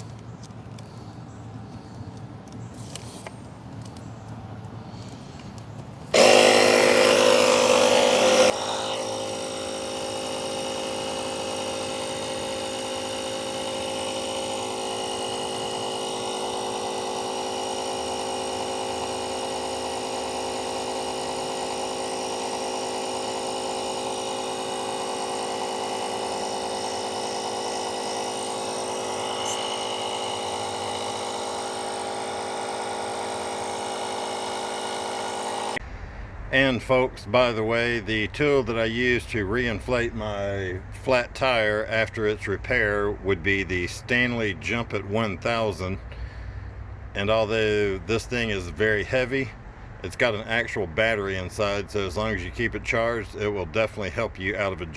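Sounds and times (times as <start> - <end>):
air compressor motor whine: 0.0 - 36.4, 43.9 - 50.0.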